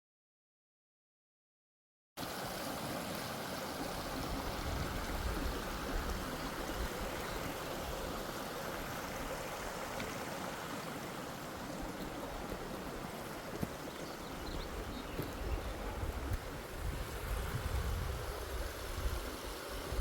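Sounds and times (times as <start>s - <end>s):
mountain stream rushing: 2.2s - 20.0s.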